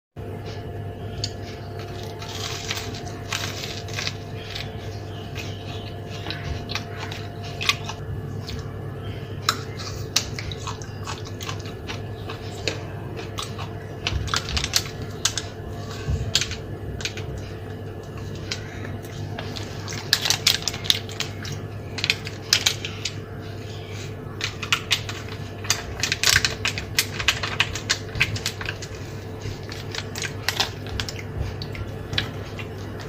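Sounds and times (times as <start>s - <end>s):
steady low hum: 0.2s - 33.0s
food crunching and chewing: 1.1s - 33.0s.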